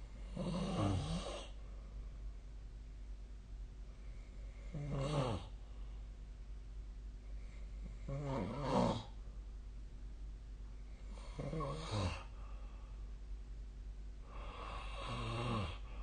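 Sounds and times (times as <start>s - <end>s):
person snoring: 0.2s - 1.6s, 4.6s - 5.6s, 7.8s - 9.1s, 11.1s - 12.4s, 14.3s - 16.0s.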